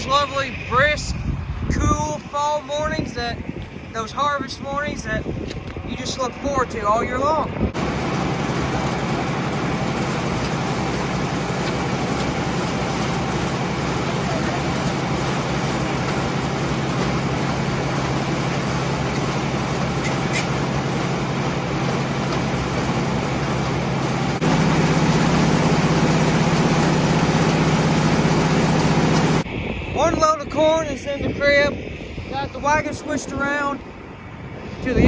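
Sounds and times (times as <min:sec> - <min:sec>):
tractor engine running: 0:07.6 - 0:29.5.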